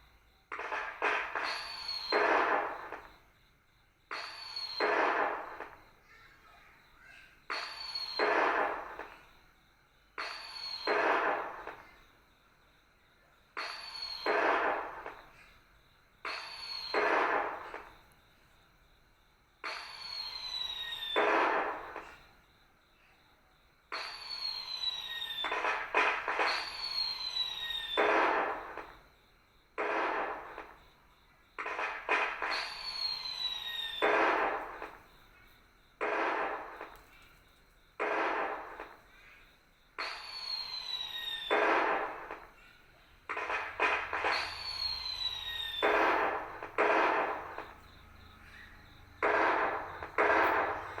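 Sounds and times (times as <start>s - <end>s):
falling firework whistle: 0.0s - 3.3s, 4.1s - 6.0s, 7.5s - 9.3s, 10.2s - 12.1s, 13.6s - 15.5s, 16.2s - 18.2s, 19.6s - 22.4s, 23.9s - 29.1s, 29.8s - 30.9s, 31.6s - 35.2s, 36.0s - 37.4s, 38.0s - 39.2s, 40.0s - 51.0s
crackling firework burst: 0.0s - 3.4s, 4.0s - 6.5s, 7.4s - 9.5s, 10.1s - 12.2s, 13.5s - 18.3s, 19.6s - 22.4s, 23.9s - 51.0s.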